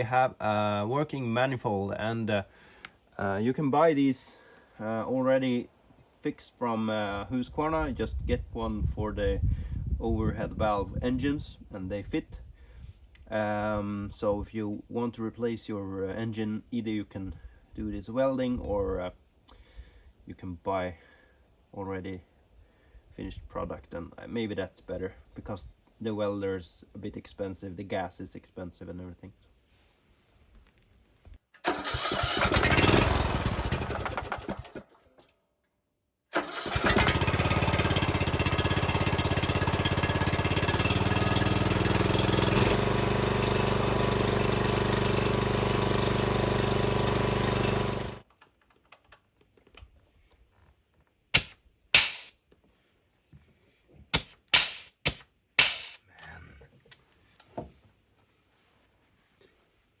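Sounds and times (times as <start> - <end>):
mower engine running: 31.6 - 34.9, 36.4 - 48.2
sharp clicks: 51.4 - 52.3
harsh noisy burst: 54.5 - 56.0.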